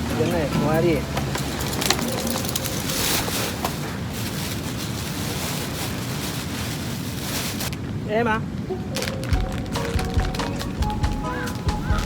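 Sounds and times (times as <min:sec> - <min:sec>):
sea waves washing: 0:00.0 - 0:12.0.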